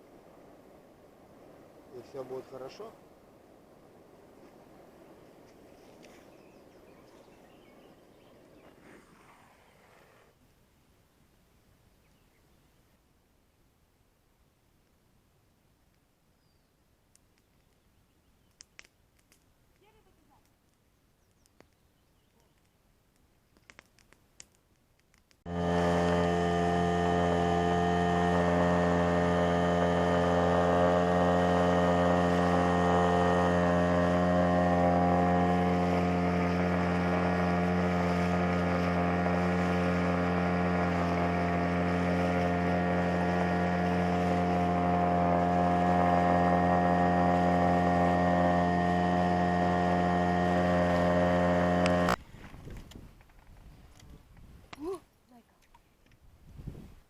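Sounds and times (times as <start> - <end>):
faint clicks: 17.1 - 25.4
outboard motor running: 25.4 - 52.8.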